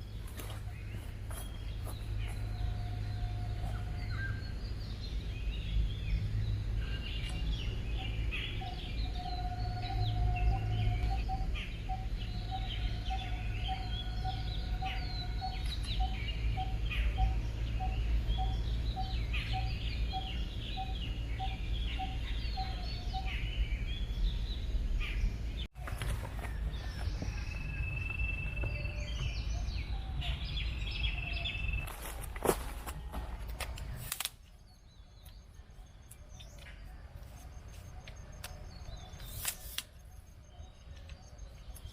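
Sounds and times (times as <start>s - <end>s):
birds chirping and singing: 0.0s - 41.9s
bird repeating low note: 6.8s - 24.1s.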